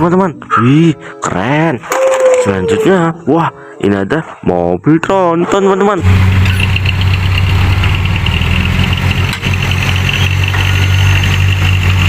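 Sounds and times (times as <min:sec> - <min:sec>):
diesel truck engine idling: 0:06.0 - 0:12.0.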